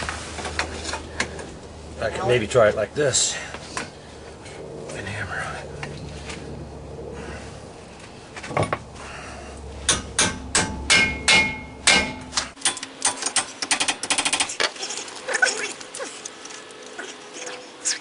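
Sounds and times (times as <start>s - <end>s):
hammer striking steel: 9.9s - 13.5s.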